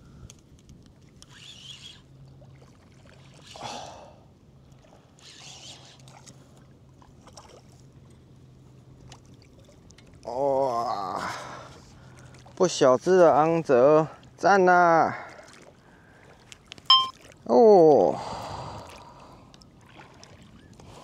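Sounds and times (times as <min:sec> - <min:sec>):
water splashing and sloshing: 0:00.4 - 0:17.5, 0:18.6 - 0:21.0.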